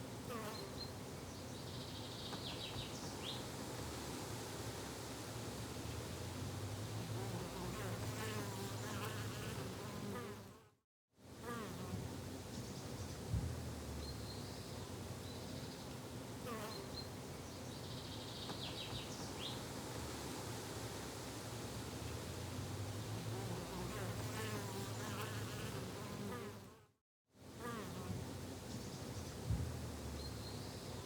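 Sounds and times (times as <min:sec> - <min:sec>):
flying insects buzzing: 0:06.8 - 0:10.6, 0:22.4 - 0:26.8.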